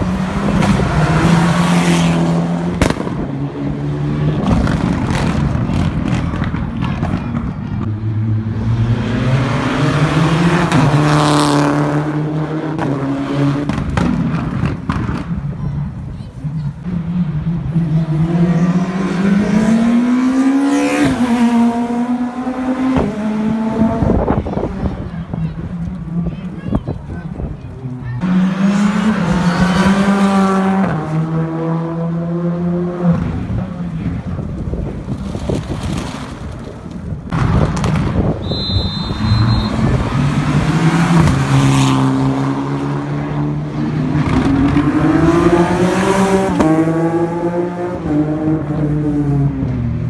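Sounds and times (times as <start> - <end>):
rally car engine passing by: 0.0 - 6.6, 7.3 - 15.4, 27.9 - 36.6, 39.1 - 50.0.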